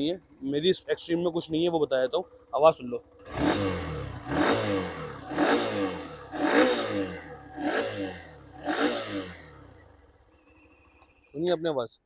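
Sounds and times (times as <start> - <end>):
motorcycle engine revving: 0.0 - 11.2.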